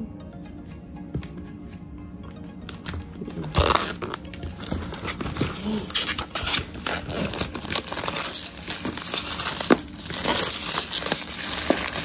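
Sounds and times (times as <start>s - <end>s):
packaging crinkling and rustling: 2.7s - 12.0s
packaging tearing: 3.5s - 12.0s.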